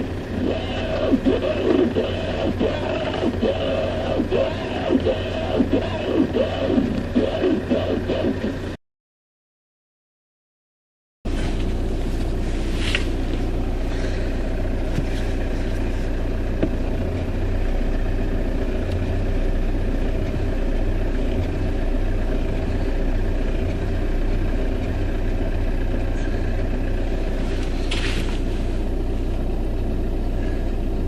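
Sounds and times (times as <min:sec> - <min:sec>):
car engine idling: 0:00.0 - 0:08.8, 0:11.3 - 0:31.0
steering wheel creaks: 0:27.4 - 0:28.5.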